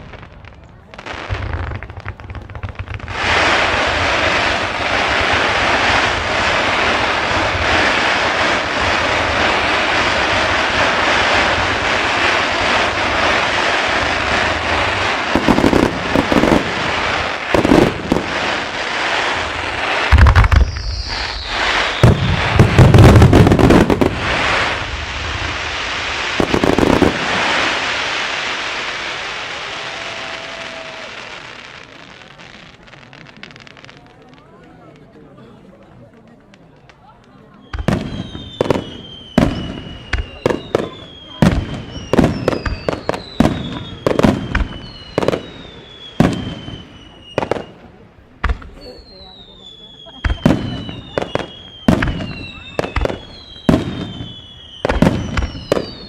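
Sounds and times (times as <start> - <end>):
fireworks crackling: 0.0 - 56.0
firework shell booms: 20.1 - 25.6, 48.4 - 48.9.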